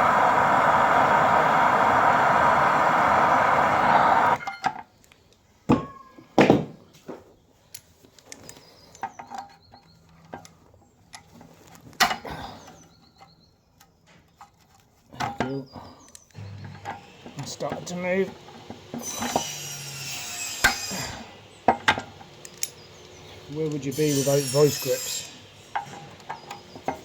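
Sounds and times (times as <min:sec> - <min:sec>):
loud rushing noise: 0:00.0 - 0:04.4.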